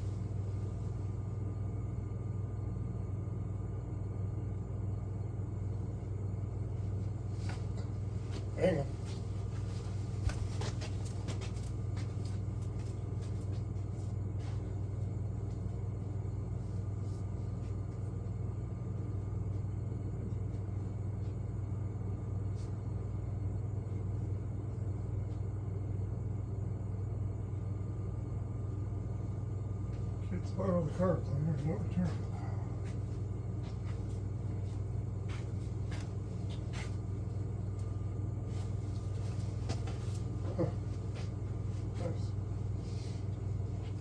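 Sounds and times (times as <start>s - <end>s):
generator engine running: 30.0s - 44.0s.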